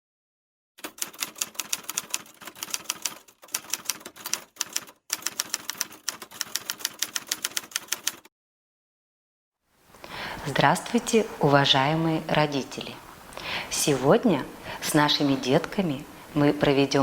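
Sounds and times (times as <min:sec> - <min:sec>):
rapid typing keystrokes: 0:00.8 - 0:08.3.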